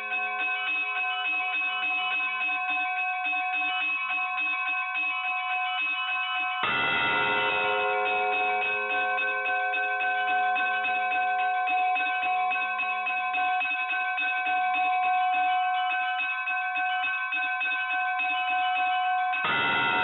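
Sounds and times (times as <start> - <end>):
church bells pealing: 6.6 - 12.5, 19.4 - 20.0.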